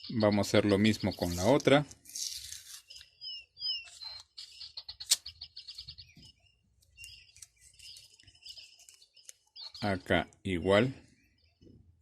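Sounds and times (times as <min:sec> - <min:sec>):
small bird chirping: 0:00.0 - 0:12.0
sharp click: 0:05.0 - 0:05.3.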